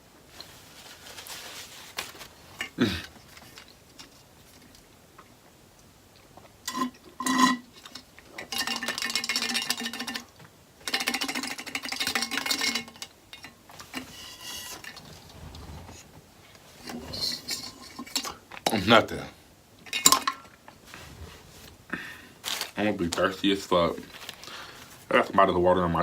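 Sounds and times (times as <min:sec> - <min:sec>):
dense food crackling: 0:13.7 - 0:18.7.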